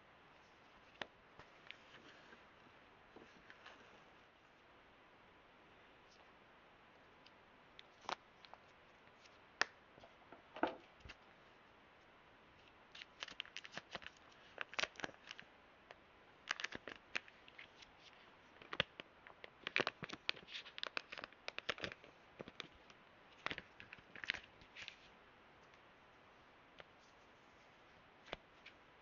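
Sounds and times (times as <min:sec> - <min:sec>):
packaging crackling: 0:16.5 - 0:17.3.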